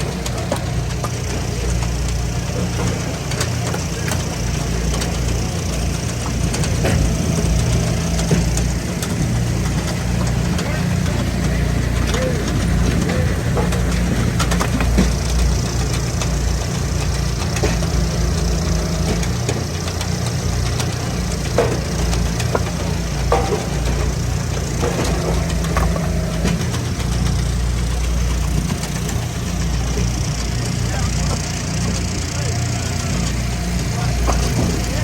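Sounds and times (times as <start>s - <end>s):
gas engine running: 0.0s - 35.0s.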